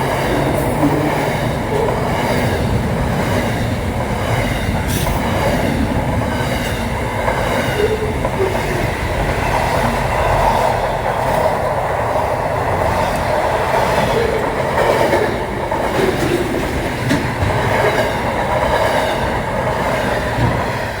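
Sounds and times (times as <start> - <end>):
freight train wagons rumbling: 0.0 - 21.0
wheels clicking on rails: 0.0 - 21.0.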